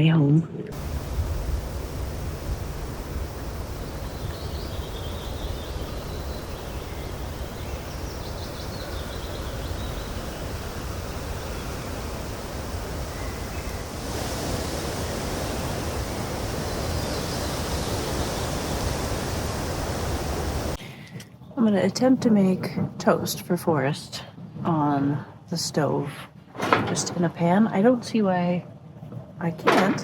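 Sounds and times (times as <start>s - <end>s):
low rumble: 0.7s - 20.8s
faint high chirps: 0.8s - 20.8s.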